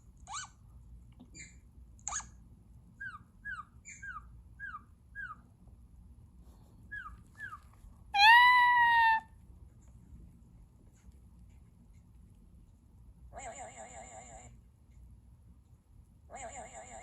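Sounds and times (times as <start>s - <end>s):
long loud bird call: 8.2s - 9.2s.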